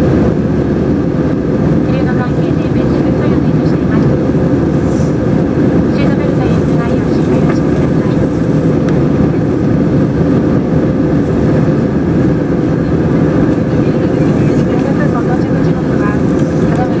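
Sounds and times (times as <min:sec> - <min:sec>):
airliner cabin engine rumble: 0:00.0 - 0:17.0.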